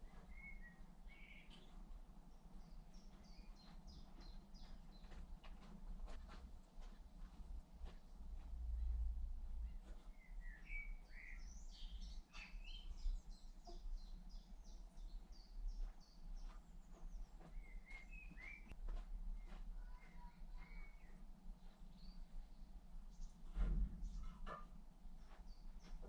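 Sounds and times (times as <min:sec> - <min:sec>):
faint low rumble: 0:00.0 - 0:10.6
songbird chirping: 0:00.0 - 0:26.0.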